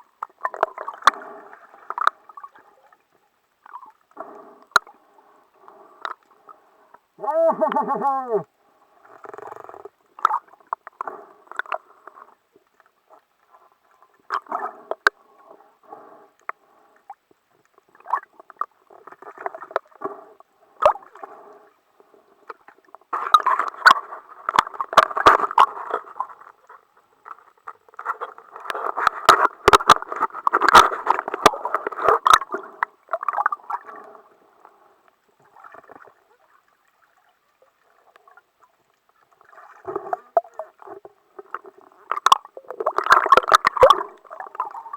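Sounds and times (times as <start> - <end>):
water gurgling and bubbling: 7.2 - 8.5.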